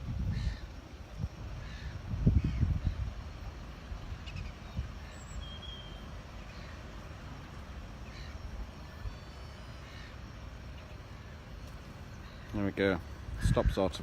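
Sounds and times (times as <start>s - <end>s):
wind rumbling on microphone: 0.0s - 10.0s, 10.8s - 14.0s
faint bird calls: 0.3s - 0.8s, 1.5s - 3.2s, 4.0s - 13.9s.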